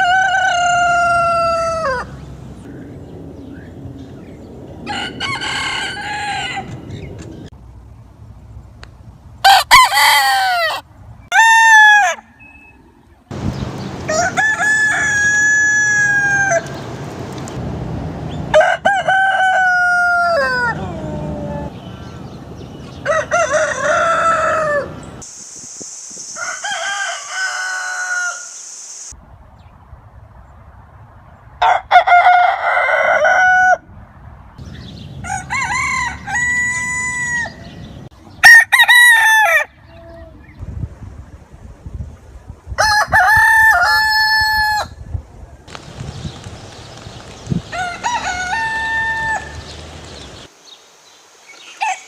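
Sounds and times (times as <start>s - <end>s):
roosters crowing: 0.0s - 2.3s, 4.8s - 7.1s, 9.4s - 12.7s, 13.3s - 17.0s, 18.3s - 25.2s, 26.3s - 28.6s, 31.6s - 33.9s, 34.9s - 40.0s, 42.8s - 45.0s, 45.7s - 50.5s, 51.6s - 52.0s
steady hiss: 25.2s - 29.2s.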